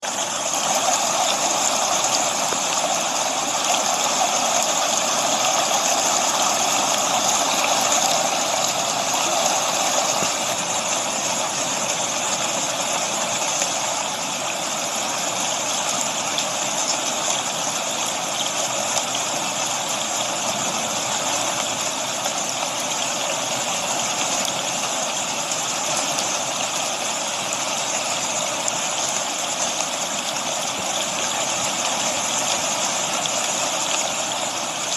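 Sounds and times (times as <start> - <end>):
steady rain: 0.0 - 34.9
waterfall rushing: 0.0 - 34.9.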